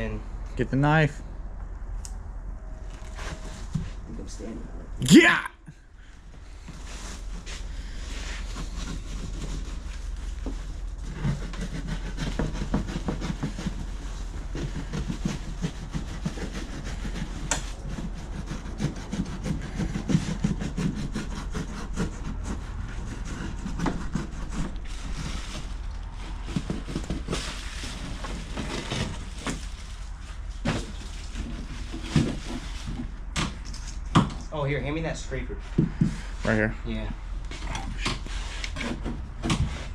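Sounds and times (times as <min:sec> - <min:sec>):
carpet and wood tearing: 0:06.8 - 0:33.0.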